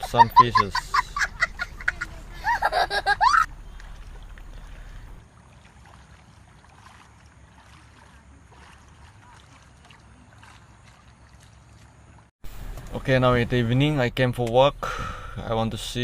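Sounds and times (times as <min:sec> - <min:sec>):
low steady rumble: 0:00.0 - 0:05.4, 0:12.5 - 0:16.0
water splashing and lapping: 0:00.0 - 0:13.7.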